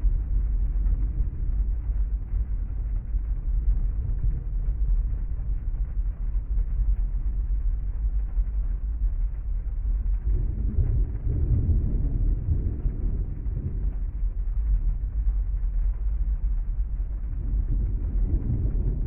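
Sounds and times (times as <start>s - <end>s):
rain heard inside a car: 0.0s - 19.0s.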